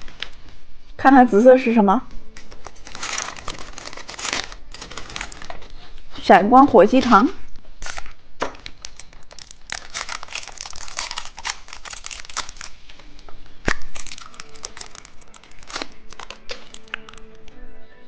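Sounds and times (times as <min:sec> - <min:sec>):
plastic wrapper crinkling: 0:02.4 - 0:05.9, 0:07.8 - 0:13.0, 0:13.6 - 0:17.5.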